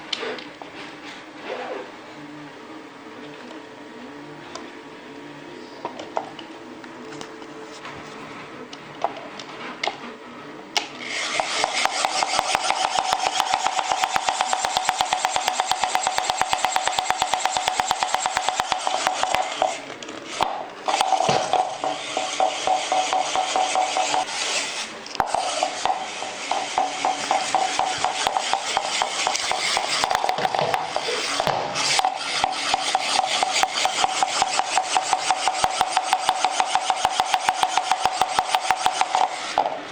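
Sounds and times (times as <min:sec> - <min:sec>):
small motor whining: 0:11.0 - 0:39.9.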